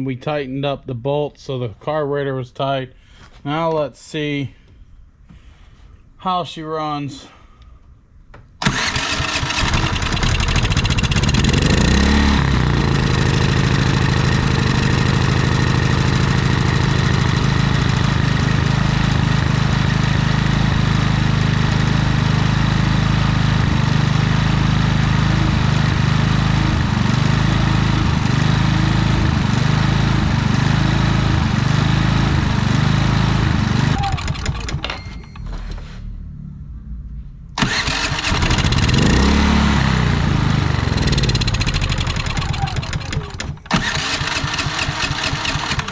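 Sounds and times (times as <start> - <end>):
generator engine running: 8.6 - 35.0, 37.6 - 45.9.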